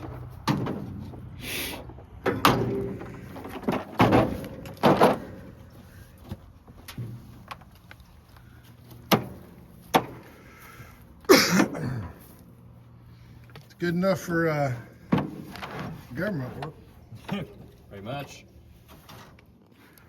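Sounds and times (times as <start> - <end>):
metal tools knocking and clunking: 2.2 - 5.7.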